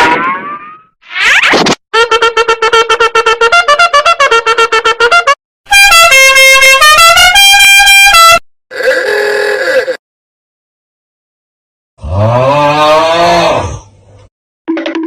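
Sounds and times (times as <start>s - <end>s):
loud horn-like melody: 2.0s - 8.4s.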